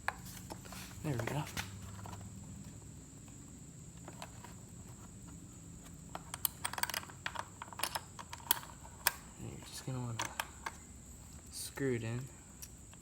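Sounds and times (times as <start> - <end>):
clicks of small parts handled: 6.1 - 9.3, 10.0 - 10.8.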